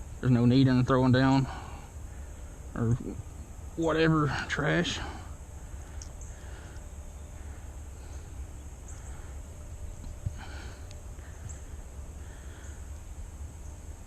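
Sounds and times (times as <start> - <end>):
faint high hiss: 0.0 - 14.0
steady low rumble: 0.0 - 14.0
person breathing through nose: 10.3 - 12.9.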